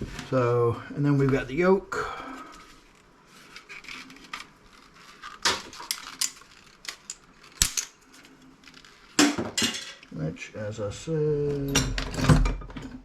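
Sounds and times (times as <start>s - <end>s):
scrap parts clicking and clinking: 5.5s - 8.0s.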